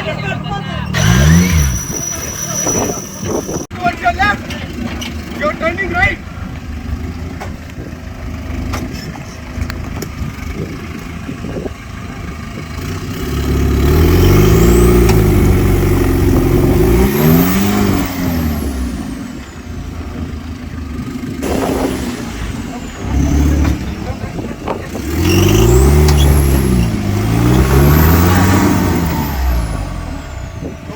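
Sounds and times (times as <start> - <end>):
engine revving hard: 0.9 - 3.0, 12.7 - 19.8, 20.9 - 30.9.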